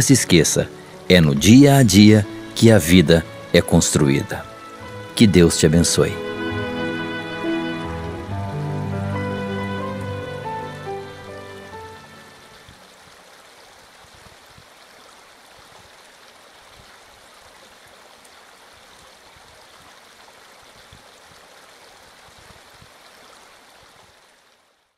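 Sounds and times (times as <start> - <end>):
soft background music: 0.0 - 12.9
gentle flowing stream: 0.0 - 24.9.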